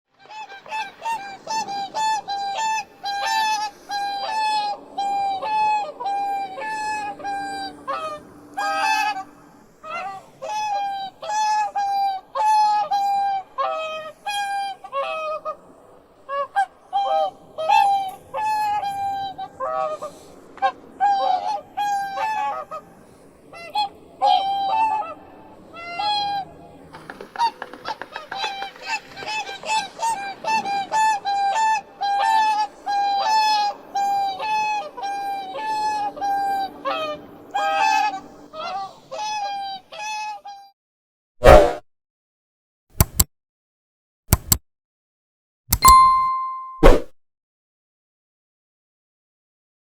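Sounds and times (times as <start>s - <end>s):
swans honking: 0.5s - 9.3s, 28.0s - 40.2s.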